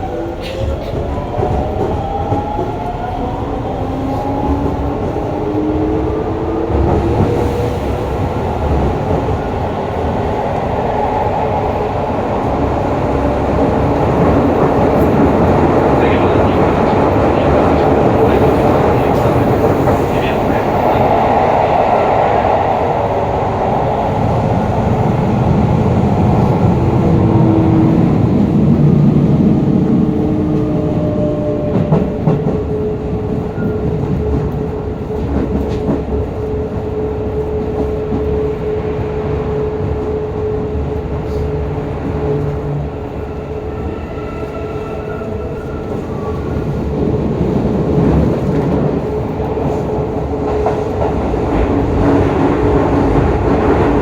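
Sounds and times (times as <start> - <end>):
train wheel and rail rumble: 0.0 - 54.0.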